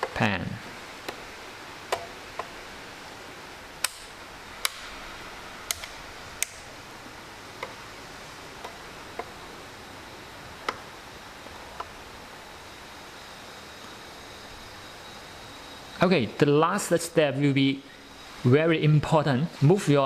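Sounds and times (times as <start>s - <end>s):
faint steady hiss: 0.0s - 20.0s
sharp switch clicks: 1.9s - 2.5s, 3.8s - 4.9s, 5.7s - 6.7s.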